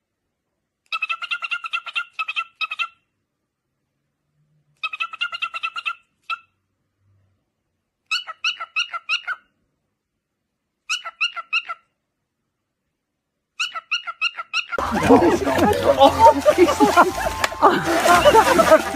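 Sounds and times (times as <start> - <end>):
animal high chirping calls: 8.1 - 9.5, 10.9 - 11.8.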